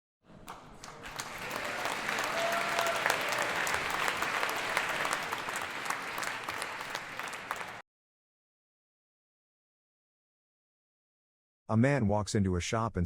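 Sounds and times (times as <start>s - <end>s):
crowd applauding: 0.4s - 7.8s.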